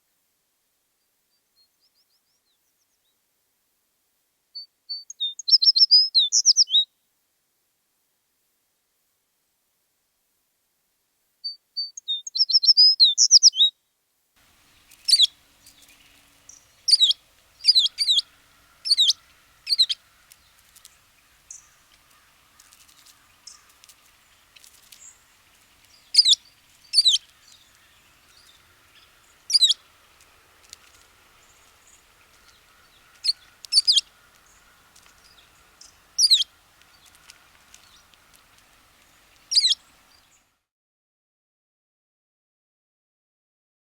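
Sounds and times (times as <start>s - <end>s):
sparrow twittering: 5.0s - 6.8s, 11.9s - 13.7s, 14.6s - 40.4s.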